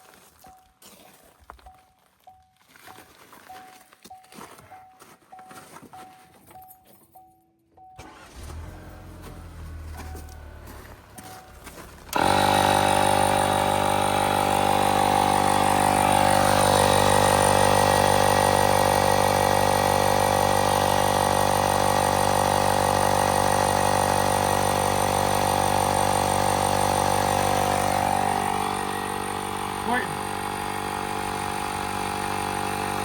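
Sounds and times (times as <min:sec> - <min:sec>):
tire inflator running: 0:08.0 - 0:33.0.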